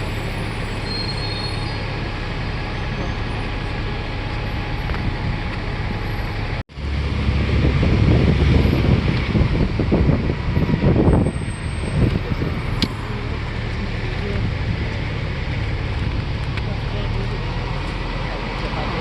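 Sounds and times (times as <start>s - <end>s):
bus low rumble: 0.0s - 19.0s
city street traffic: 0.0s - 19.0s.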